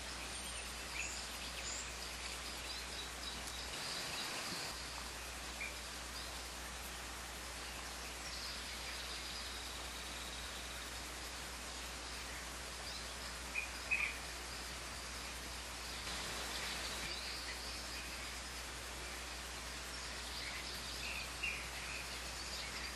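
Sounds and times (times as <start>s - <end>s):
outdoor background hiss: 0.0s - 22.9s.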